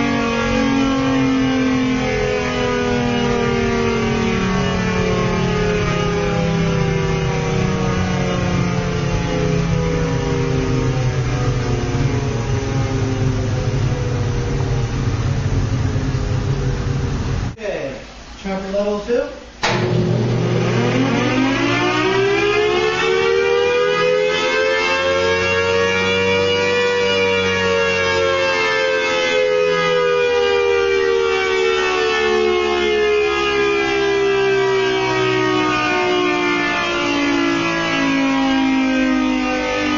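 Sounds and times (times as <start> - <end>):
motor hum: 0.0 - 17.6, 19.6 - 23.8
siren wail: 0.0 - 17.6, 19.7 - 39.9.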